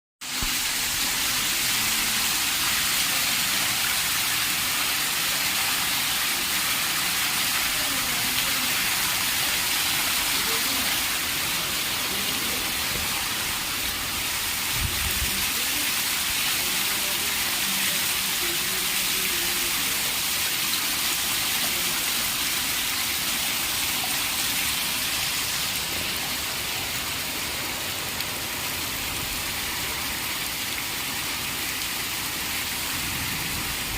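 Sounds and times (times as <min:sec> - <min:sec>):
heavy rain hissing: 0:00.2 - 0:33.9.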